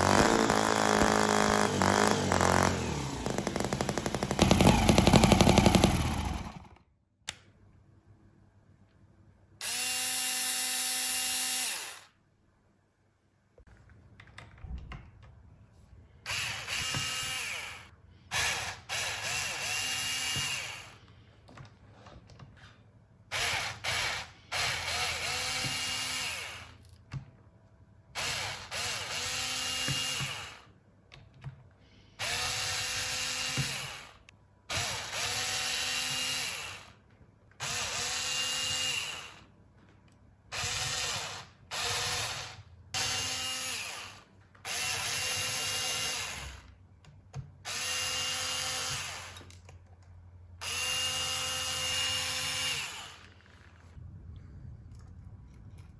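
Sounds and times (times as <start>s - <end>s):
model engine whirring whine: 0.0s - 6.7s.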